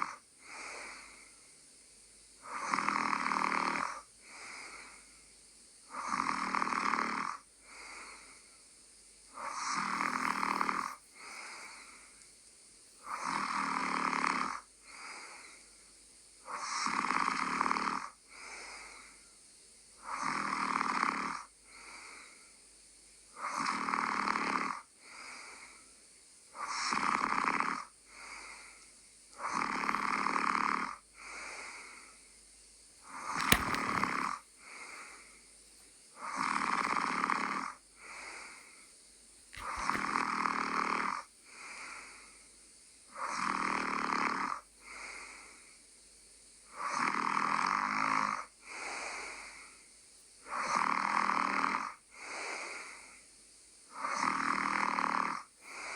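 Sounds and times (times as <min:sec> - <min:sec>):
person snoring: 0:02.5 - 0:04.0, 0:09.4 - 0:11.6, 0:13.1 - 0:14.6, 0:39.6 - 0:41.7.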